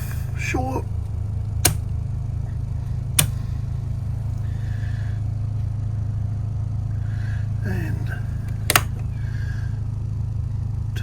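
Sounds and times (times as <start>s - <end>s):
low machinery hum: 0.0s - 11.0s
breaker switch click: 1.6s - 2.0s, 3.2s - 3.6s, 8.4s - 9.1s.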